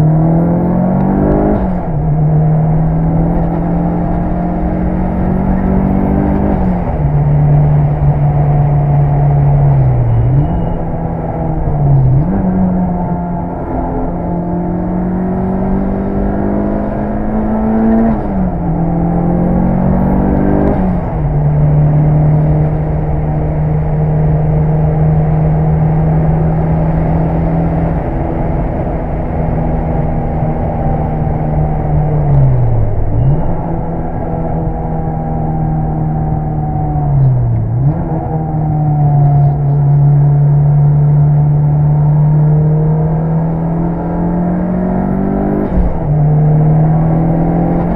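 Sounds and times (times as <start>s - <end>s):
turbocharged car engine revving: 0.0s - 47.9s.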